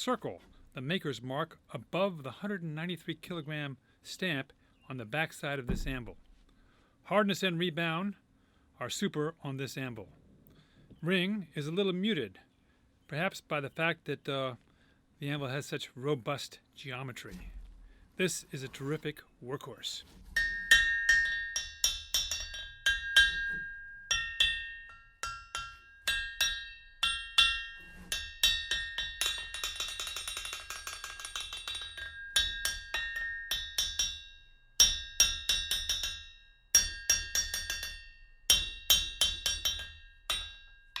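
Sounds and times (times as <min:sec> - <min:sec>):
hammer ringing on anvil: 0:20.4 - 0:41.0.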